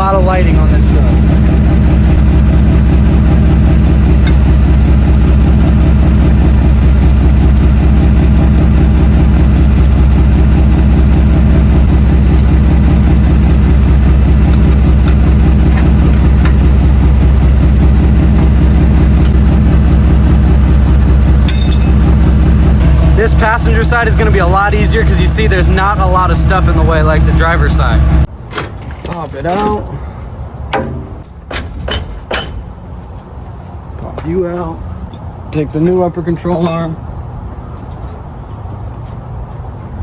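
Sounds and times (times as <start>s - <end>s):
pickup truck engine idling: 0.0s - 28.3s.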